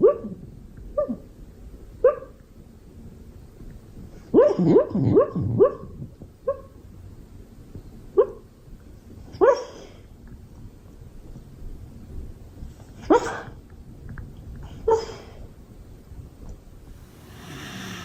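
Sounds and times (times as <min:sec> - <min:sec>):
dog barking: 0:00.0 - 0:00.4, 0:02.0 - 0:02.4, 0:04.3 - 0:05.9, 0:08.2 - 0:08.4, 0:09.4 - 0:09.8.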